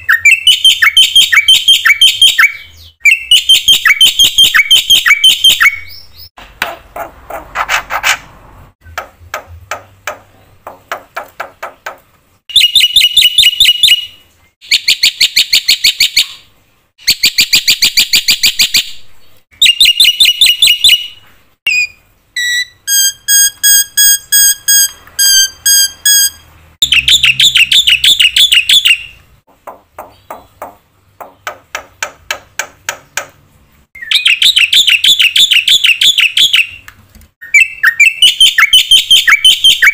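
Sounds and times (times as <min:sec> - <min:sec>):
whistled bird notes: 0:00.0 - 0:06.3, 0:12.5 - 0:16.5, 0:19.6 - 0:29.2, 0:34.0 - 0:39.9.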